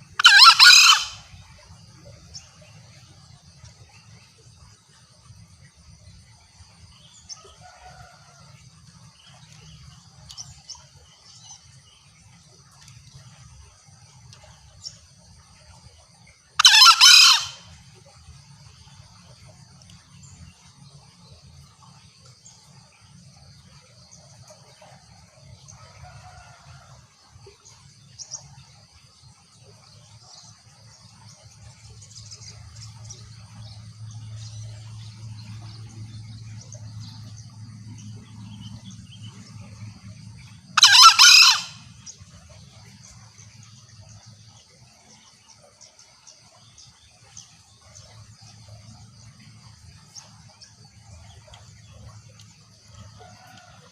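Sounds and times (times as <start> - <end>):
junglefowl call: 0.1 - 1.6, 16.6 - 17.8, 40.8 - 42.2.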